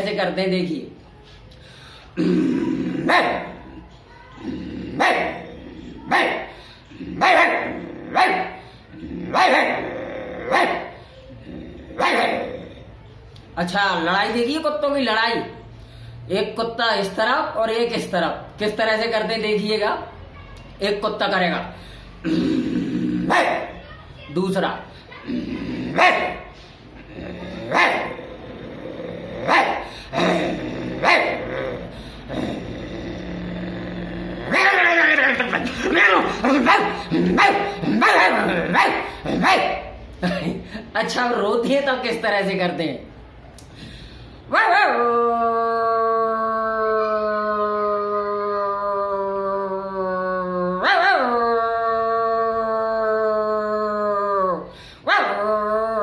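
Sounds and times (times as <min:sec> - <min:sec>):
man growling: 0:02.1 - 0:06.1, 0:06.9 - 0:10.6, 0:11.3 - 0:13.0, 0:22.2 - 0:23.4, 0:25.2 - 0:39.5, 0:45.0 - 0:56.0
man imitating dog barking: 0:02.2 - 0:03.8, 0:04.4 - 0:08.6, 0:09.2 - 0:11.0, 0:11.8 - 0:12.8, 0:22.2 - 0:23.8, 0:25.2 - 0:41.4, 0:44.5 - 0:56.0.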